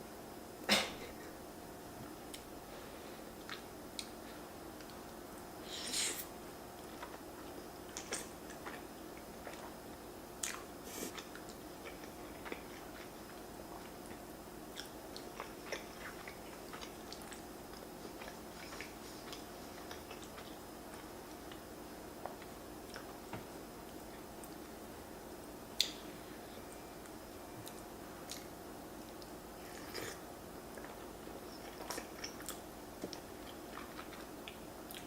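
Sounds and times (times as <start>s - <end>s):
person chewing food: 6.8s - 24.7s, 25.7s - 35.0s.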